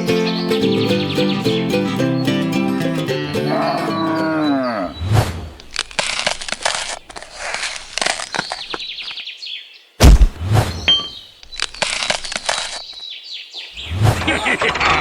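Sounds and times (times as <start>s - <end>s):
cow mooing: 3.3s - 5.0s
scraping and rustling: 5.0s - 9.1s, 10.1s - 12.9s, 13.8s - 15.0s.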